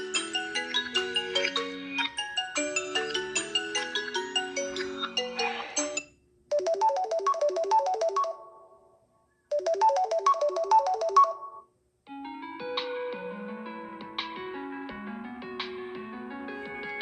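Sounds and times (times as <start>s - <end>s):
different ringtone: 0.0s - 8.9s, 9.5s - 11.7s
phone ringtone: 0.0s - 8.9s, 9.5s - 11.7s.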